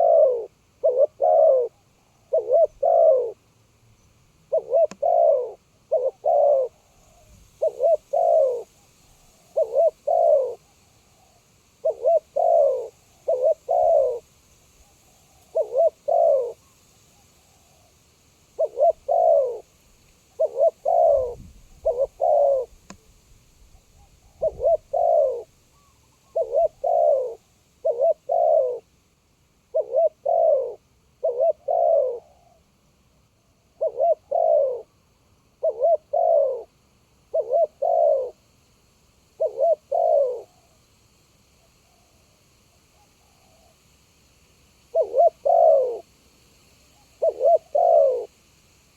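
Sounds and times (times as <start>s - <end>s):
dove cooing: 0.0s - 3.4s, 4.5s - 16.7s, 18.6s - 19.7s, 20.3s - 23.0s, 23.7s - 28.9s, 29.7s - 32.6s, 33.6s - 35.0s, 35.6s - 38.4s, 39.4s - 40.7s, 44.9s - 46.1s, 47.0s - 48.4s.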